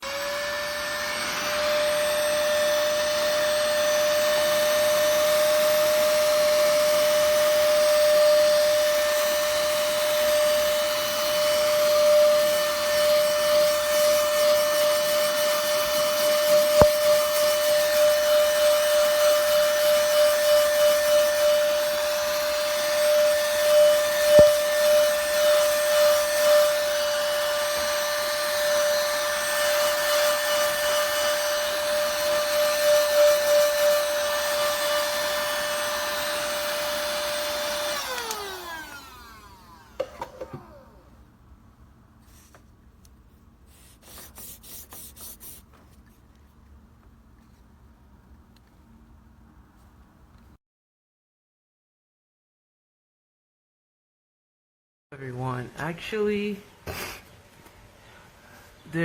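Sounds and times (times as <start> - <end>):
handheld vacuum cleaner motor whine: 0.0 - 41.2.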